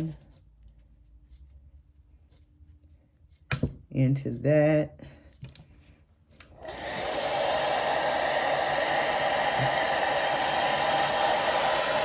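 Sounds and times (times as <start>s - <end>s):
hair dryer running: 6.5s - 12.0s.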